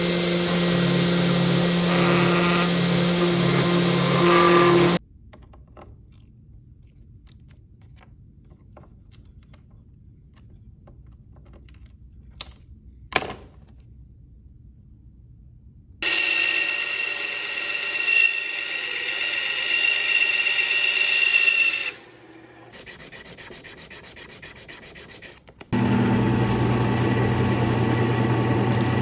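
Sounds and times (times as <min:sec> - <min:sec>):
power tool motor humming: 0:00.0 - 0:05.0, 0:16.0 - 0:23.4, 0:25.7 - 0:29.0.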